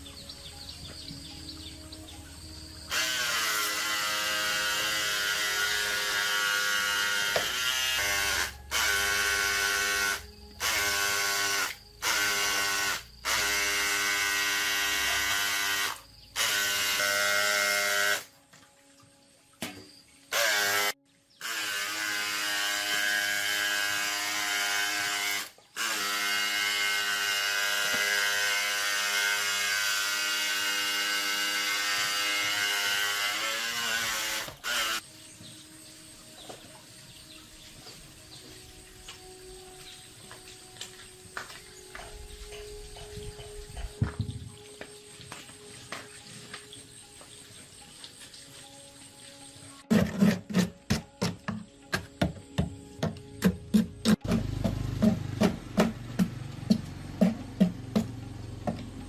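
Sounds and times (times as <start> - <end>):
small electric motor whining: 2.9 - 18.3, 20.3 - 35.0.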